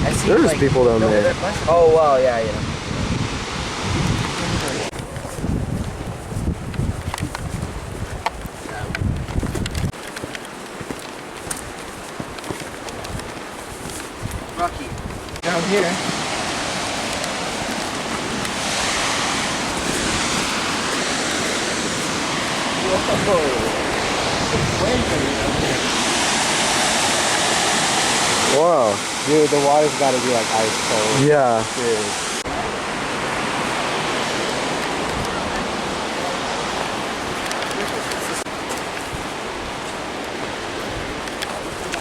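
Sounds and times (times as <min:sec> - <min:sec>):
waterfall rushing water: 0:12.0 - 0:42.0.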